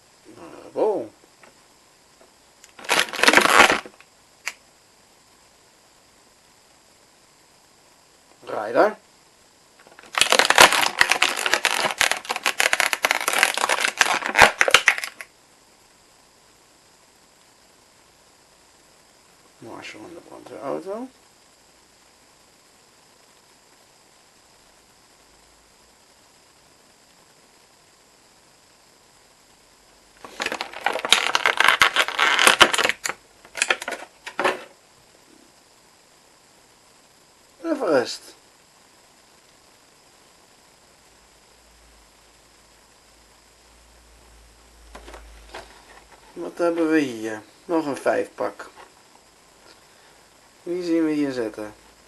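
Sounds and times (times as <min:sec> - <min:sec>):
packaging crinkling: 0:02.6 - 0:04.6, 0:09.8 - 0:15.3, 0:30.2 - 0:34.7.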